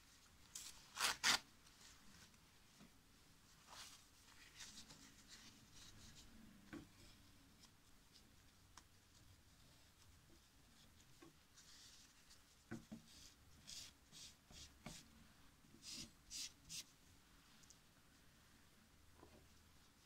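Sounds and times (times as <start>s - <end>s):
faint wiping strokes: 3.4s - 17.6s.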